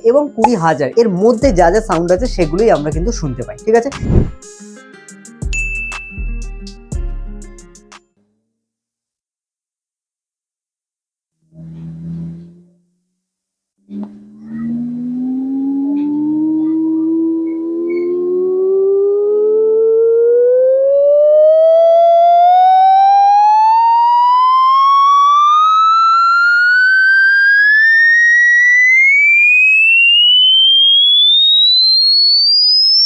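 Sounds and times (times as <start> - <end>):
rising pure tone sweep: 4.0 - 4.4, 11.6 - 12.8, 13.9 - 33.0.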